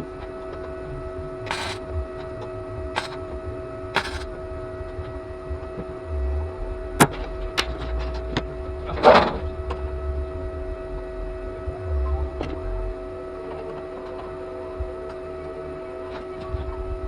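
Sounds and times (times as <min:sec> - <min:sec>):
steady electrical hum: 0:00.0 - 0:17.0
short rasping burst: 0:01.5 - 0:01.9, 0:03.0 - 0:03.2, 0:04.0 - 0:04.3.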